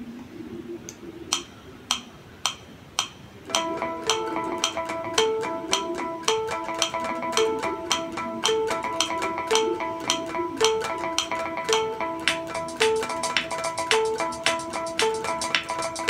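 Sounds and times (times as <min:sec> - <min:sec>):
guitar pick clicks: 0:00.9 - 0:16.0
guitar harmonics ringing: 0:03.5 - 0:16.0.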